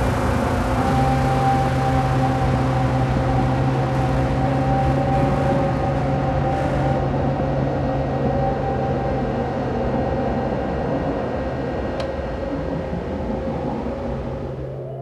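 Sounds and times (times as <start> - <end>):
steady droning hum: 0.0 - 15.0
faint click: 12.0 - 12.2.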